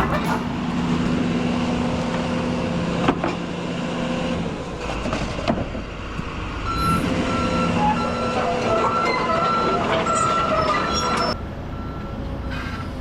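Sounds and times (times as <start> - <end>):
sharp metallic knocks: 0.0 - 1.0
diesel engine running: 0.0 - 10.3.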